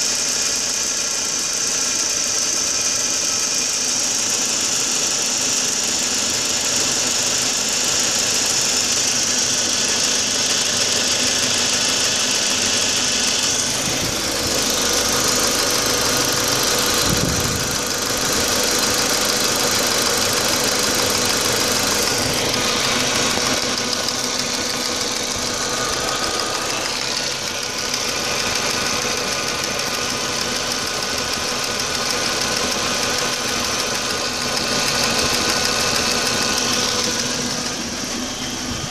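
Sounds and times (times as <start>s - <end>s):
car engine idling roughly: 0.0s - 38.9s.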